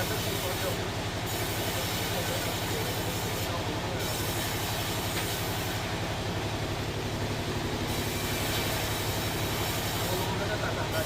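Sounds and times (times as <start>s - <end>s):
sawmill machinery running: 0.0s - 11.0s.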